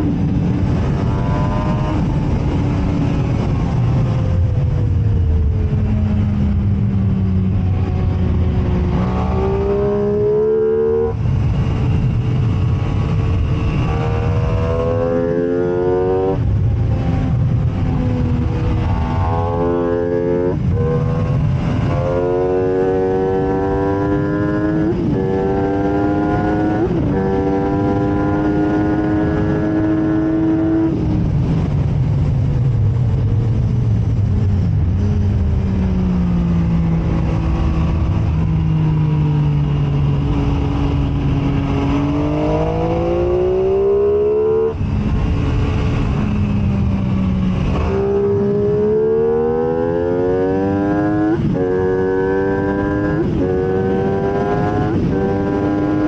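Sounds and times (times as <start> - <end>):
sport bike engine revving: 0.7 - 3.6, 8.6 - 11.8, 12.9 - 17.2, 17.8 - 31.0, 40.3 - 46.2, 47.5 - 56.0.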